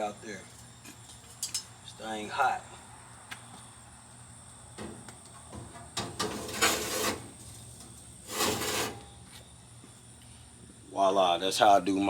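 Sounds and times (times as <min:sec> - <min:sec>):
charcoal rattling scrapes: 0:05.9 - 0:09.2.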